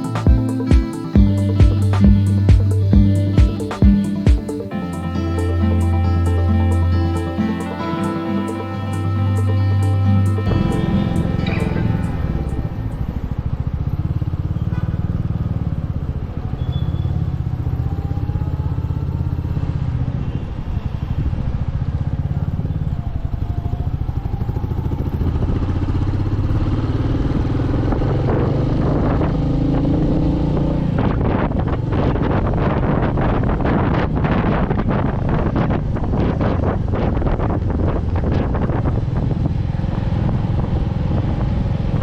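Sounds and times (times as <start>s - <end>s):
wind buffeting microphone: 27.1s - 42.0s.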